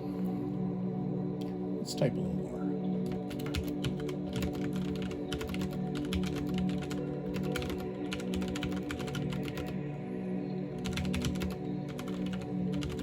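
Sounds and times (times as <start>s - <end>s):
background music: 0.0s - 13.0s
fast typing on mechanical keyboard: 3.1s - 9.8s, 10.8s - 13.0s.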